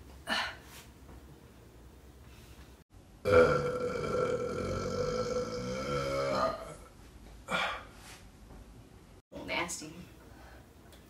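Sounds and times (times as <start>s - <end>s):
woman burping: 3.3s - 6.9s.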